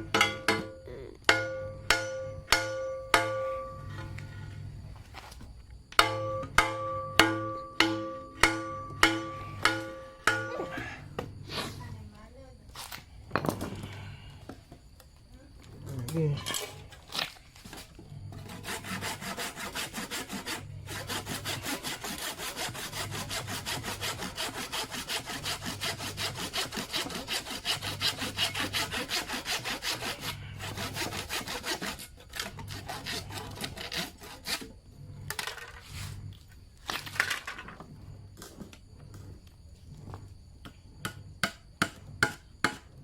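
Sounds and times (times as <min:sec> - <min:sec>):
sharp knocks: 0:00.0 - 0:03.6, 0:06.0 - 0:11.3
hand saw cutting wood: 0:17.1 - 0:34.8.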